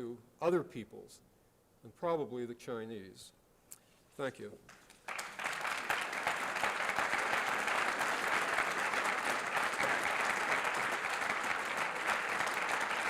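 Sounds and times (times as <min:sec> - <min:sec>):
audience applauding: 0:04.9 - 0:13.0.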